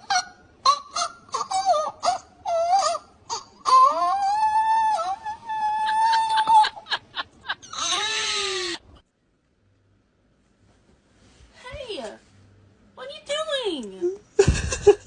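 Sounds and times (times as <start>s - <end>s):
animal crying: 0.0s - 8.8s.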